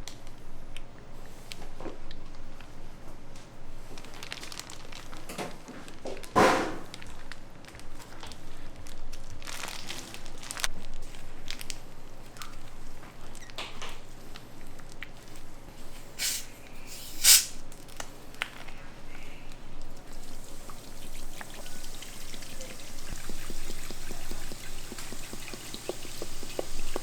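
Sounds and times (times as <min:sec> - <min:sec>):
kitchen knocks and taps: 0:21.4 - 0:27.0.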